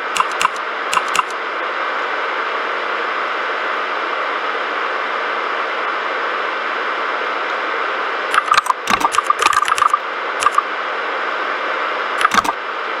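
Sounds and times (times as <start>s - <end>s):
mechanical keyboard key clicks: 0.0s - 1.3s, 8.3s - 10.6s, 12.2s - 12.6s.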